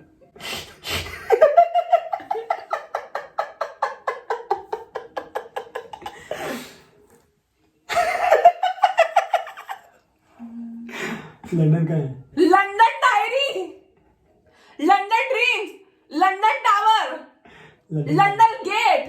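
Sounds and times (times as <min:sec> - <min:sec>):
person laughing hard: 0:00.7 - 0:06.7.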